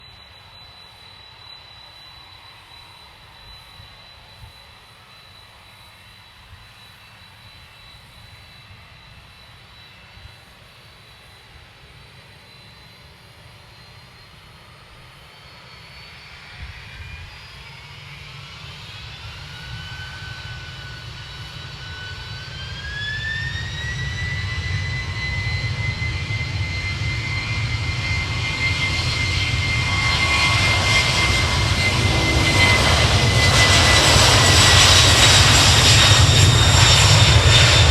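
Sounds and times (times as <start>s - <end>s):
jet engines whining: 8.0s - 37.9s.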